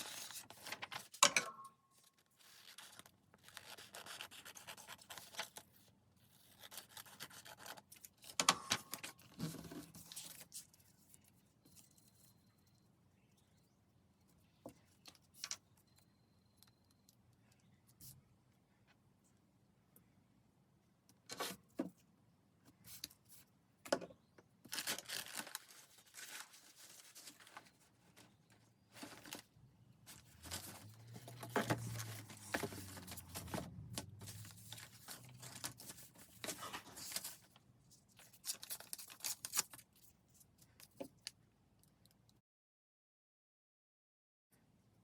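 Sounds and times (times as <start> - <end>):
paper rustling and crinkling: 0.0 - 1.2, 2.1 - 12.2, 24.7 - 41.1.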